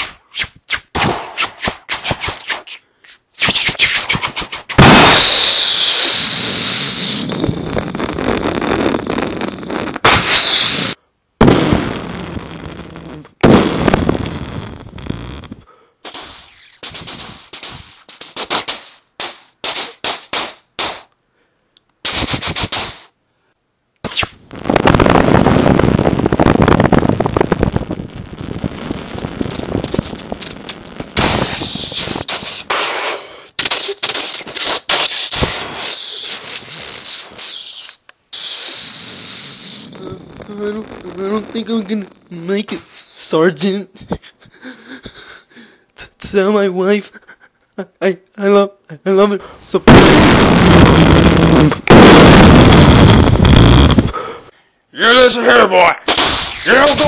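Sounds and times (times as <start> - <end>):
mouth-made gunfire bursts: 22.0 - 23.1, 49.9 - 53.8, 56.1 - 57.0
mouth-made blast sounds: 31.2 - 42.2, 49.8 - 54.4, 56.0 - 57.0.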